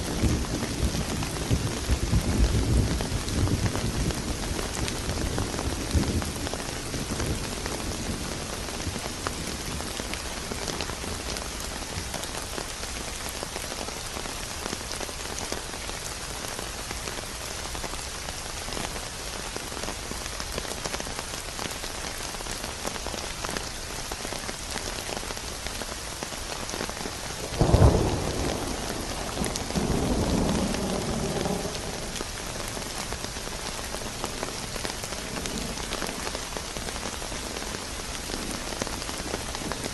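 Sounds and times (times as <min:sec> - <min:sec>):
rain pattering: 0:00.0 - 0:39.9
thunder rumbling: 0:27.4 - 0:33.1
sharp thunderclap: 0:27.5 - 0:32.2.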